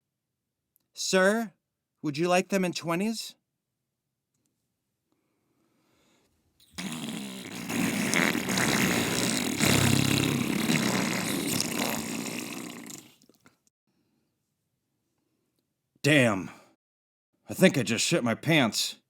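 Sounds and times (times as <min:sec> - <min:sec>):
cartoon fart sound effect: 0:06.6 - 0:13.2.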